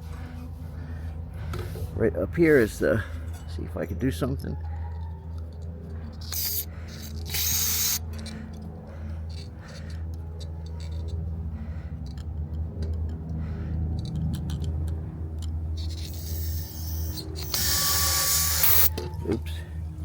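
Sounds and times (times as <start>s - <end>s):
steady low hum: 0.0s - 20.0s
small tools clicking and scraping: 4.4s - 19.2s
spray nozzle hissing blasts: 6.2s - 8.0s, 15.8s - 18.9s.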